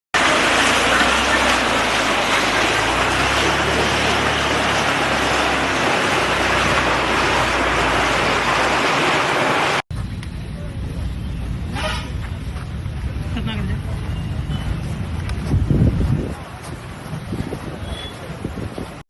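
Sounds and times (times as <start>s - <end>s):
loud rushing noise: 0.2s - 9.8s.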